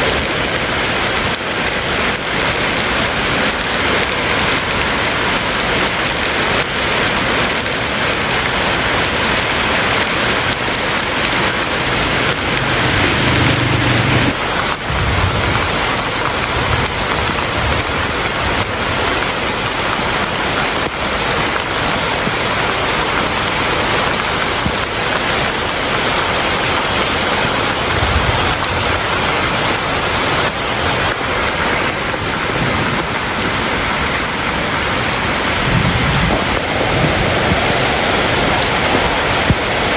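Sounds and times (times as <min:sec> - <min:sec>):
heavy rain: 0:00.0 - 0:39.9
low rumbles: 0:11.2 - 0:18.0.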